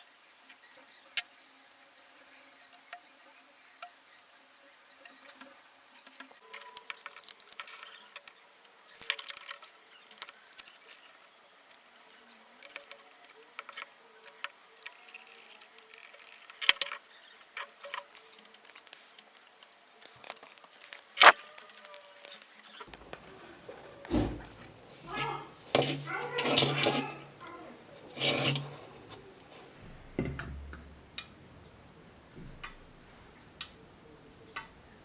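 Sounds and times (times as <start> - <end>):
objects clicking and rattling: 5.0 - 8.4, 9.0 - 31.2.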